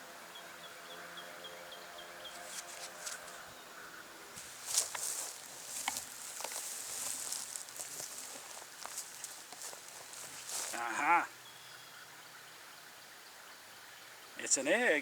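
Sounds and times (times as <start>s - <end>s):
dirt rustling: 2.2s - 3.5s, 4.3s - 11.3s
faint rapid chirping: 4.4s - 10.8s.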